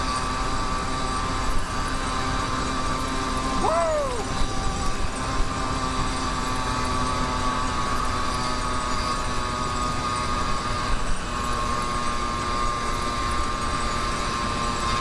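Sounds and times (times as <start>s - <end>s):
two-stroke engine high drone: 0.0s - 15.0s.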